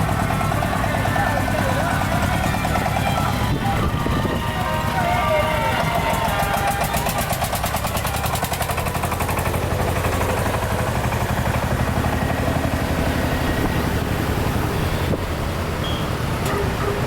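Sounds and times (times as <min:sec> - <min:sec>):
vehicle engine running: 0:00.0 - 0:17.0
fast rattle: 0:05.8 - 0:12.6.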